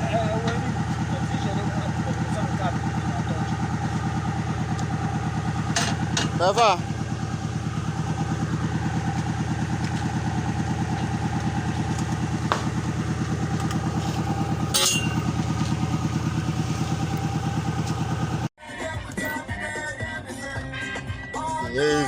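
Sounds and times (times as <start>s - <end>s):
engine idling: 0.0s - 18.5s
sharp clank: 12.5s - 12.8s, 14.7s - 15.3s.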